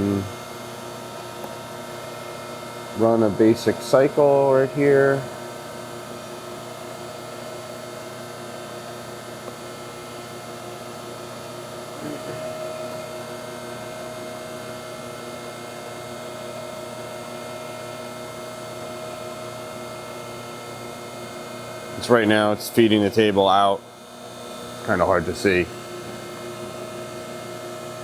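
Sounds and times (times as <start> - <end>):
surface grinder humming and whining: 2.9 - 5.4, 11.6 - 15.5.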